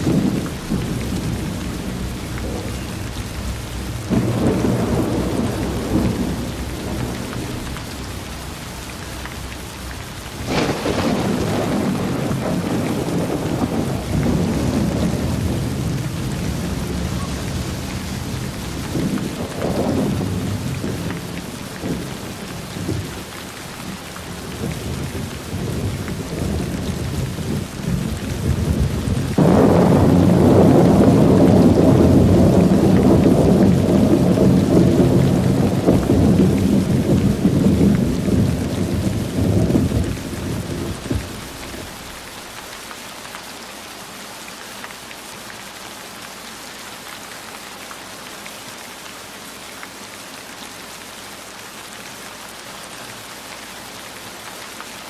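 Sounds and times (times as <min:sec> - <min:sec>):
sharp thunder crack: 0:00.0 - 0:08.4, 0:10.4 - 0:22.1, 0:24.6 - 0:42.3
rolling thunder: 0:00.0 - 0:42.4
heavy rain: 0:00.0 - 0:55.0.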